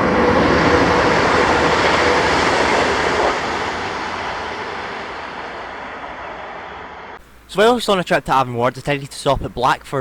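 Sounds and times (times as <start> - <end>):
train passing at speed: 0.0 - 7.2.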